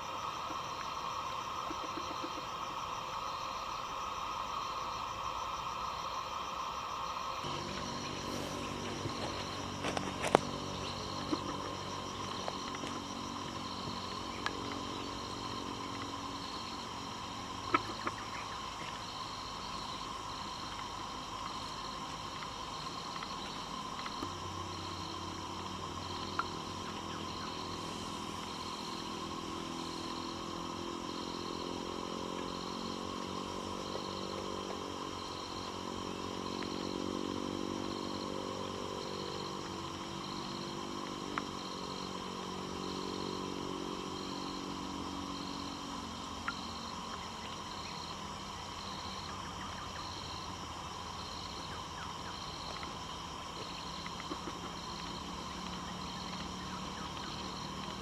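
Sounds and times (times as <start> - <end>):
distant engine drone: 0.0 - 58.0
forest insect buzz: 0.0 - 58.0
high pulsing chirp: 7.4 - 16.8.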